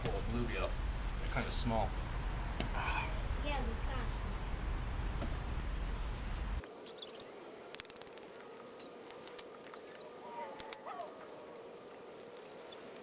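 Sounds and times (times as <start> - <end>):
small clicks: 6.6 - 11.3.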